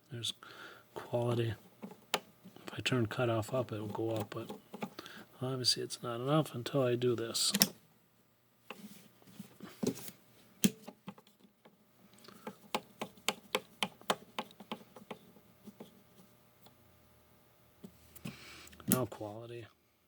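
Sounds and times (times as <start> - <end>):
knob and switch clicks: 7.5 - 7.8.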